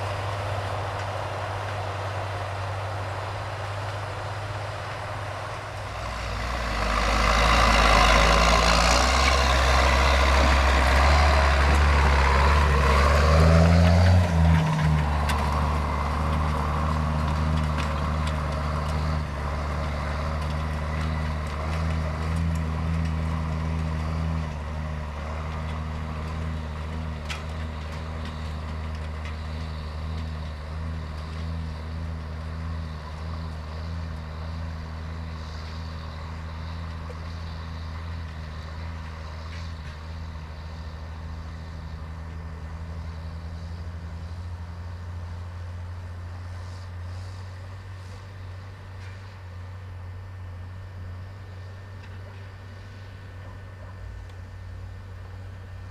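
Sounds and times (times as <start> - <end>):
tractor diesel engine running: 0.0 - 55.9.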